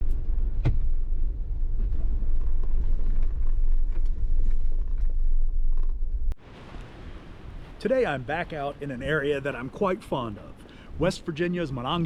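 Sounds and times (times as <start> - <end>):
vehicle driving low rumble: 0.0 - 6.4.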